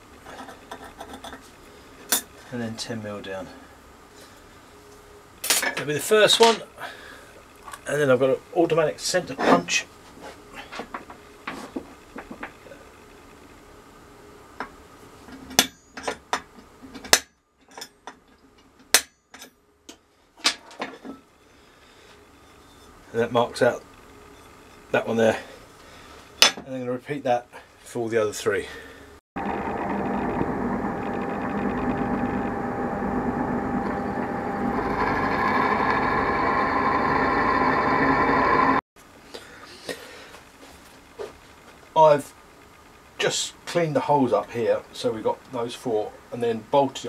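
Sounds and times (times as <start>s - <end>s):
electric drill drilling metal: 29.4s - 38.8s.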